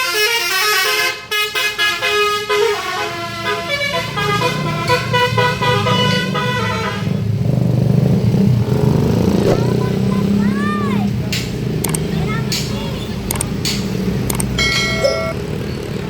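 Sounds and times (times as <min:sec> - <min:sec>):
musical bus horn melody: 0:00.0 - 0:07.3
bus engine rumble: 0:02.2 - 0:16.0.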